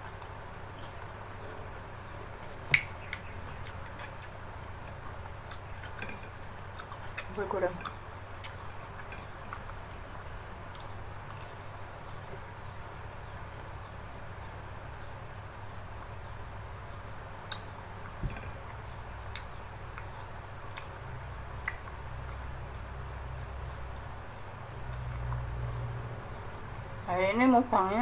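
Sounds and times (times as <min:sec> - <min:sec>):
steady low hum: 0:00.0 - 0:28.0
mouth eating noises: 0:02.4 - 0:09.9.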